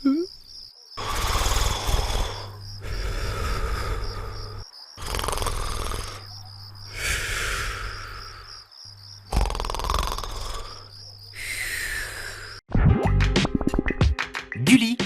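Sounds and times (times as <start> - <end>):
crickets chirping: 0.0 - 12.6
cartoon snoring: 1.0 - 8.5, 9.3 - 12.6.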